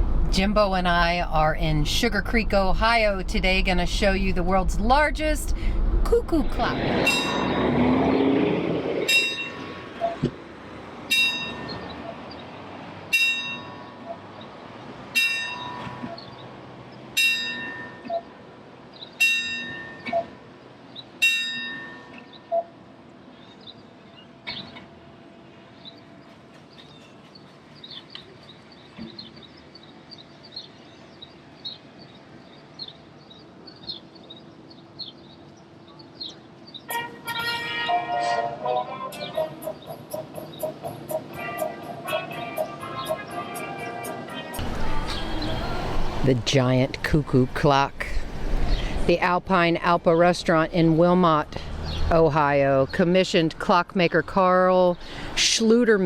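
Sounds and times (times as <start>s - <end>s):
clock bell striking: 7.1s - 7.8s, 9.1s - 9.7s, 11.1s - 11.8s, 13.1s - 13.9s, 15.2s - 16.0s, 17.2s - 18.2s, 19.2s - 20.2s, 21.2s - 22.2s.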